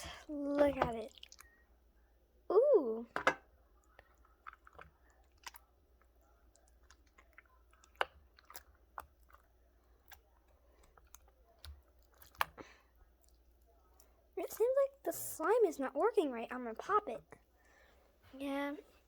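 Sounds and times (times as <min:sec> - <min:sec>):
sticky slime clicks and squelches: 0:06.5 - 0:12.6.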